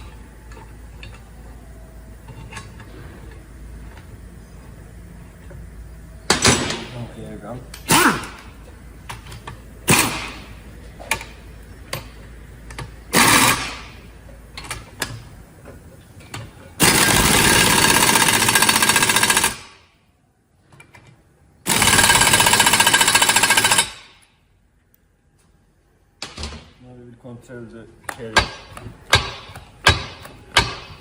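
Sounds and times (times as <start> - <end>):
pneumatic impact wrench hammering: 6.3 - 6.9, 7.8 - 8.5, 9.1 - 11.4, 12.7 - 14.0, 16.8 - 19.9, 21.6 - 24.3, 28.4 - 31.0
sharp metallic knocks: 28.3 - 31.0.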